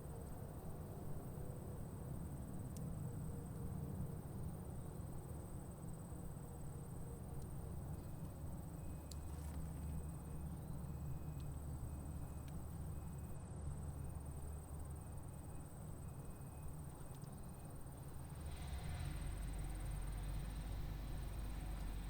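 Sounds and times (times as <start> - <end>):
faint high whine: 7.1 - 22.0.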